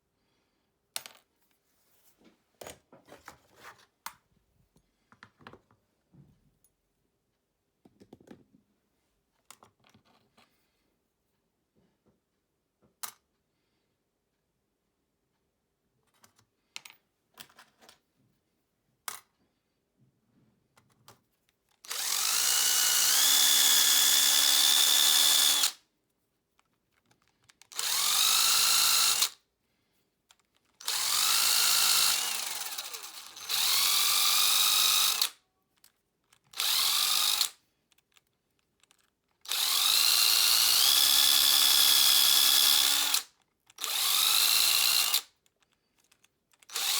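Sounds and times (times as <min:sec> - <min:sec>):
power tool whining: 0:21.9 - 0:25.8, 0:27.7 - 0:29.4, 0:30.8 - 0:35.3, 0:36.6 - 0:37.6, 0:39.5 - 0:45.2, 0:46.7 - 0:46.9.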